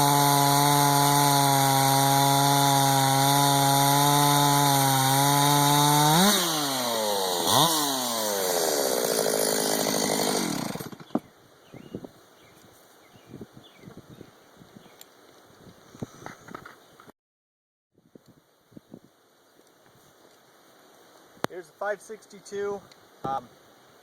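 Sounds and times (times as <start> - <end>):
chainsaw running: 0.0 - 11.2.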